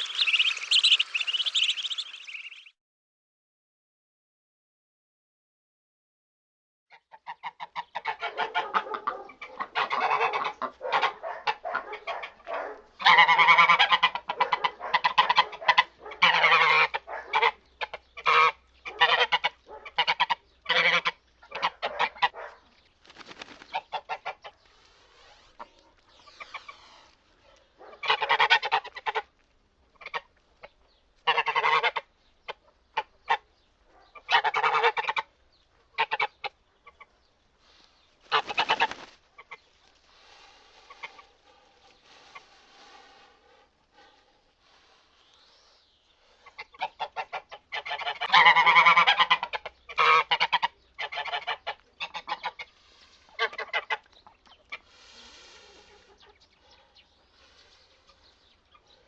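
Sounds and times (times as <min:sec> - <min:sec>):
geese honking: 0:00.0 - 0:02.7, 0:07.4 - 0:12.3, 0:13.0 - 0:22.4, 0:27.8 - 0:29.3, 0:31.2 - 0:32.1, 0:34.2 - 0:35.3, 0:46.2 - 0:54.1.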